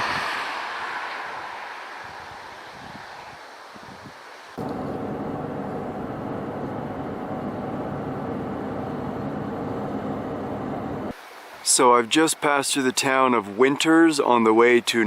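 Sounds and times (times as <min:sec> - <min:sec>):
road noise: 0:00.0 - 0:11.2
van engine hum: 0:04.6 - 0:11.2.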